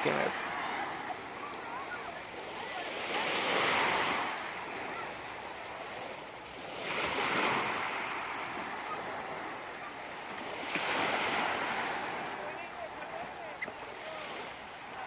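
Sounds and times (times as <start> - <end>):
ocean surf breaking on beach: 0.0 - 15.0.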